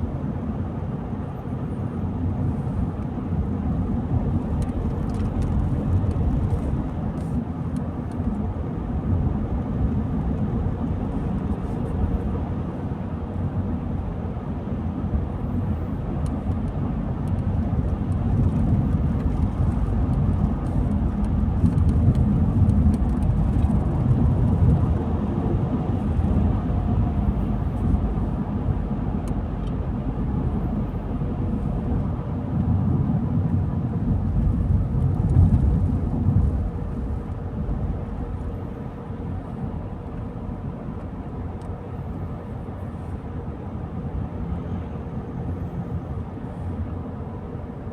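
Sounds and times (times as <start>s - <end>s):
car engine and tyre noise: 0.0s - 47.9s.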